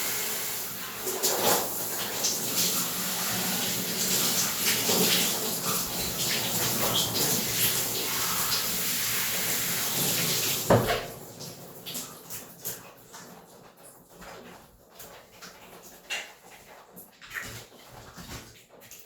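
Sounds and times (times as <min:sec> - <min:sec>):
shower spray running: 0:00.0 - 0:12.2
water splashes: 0:00.0 - 0:19.0
knock: 0:10.7 - 0:11.1.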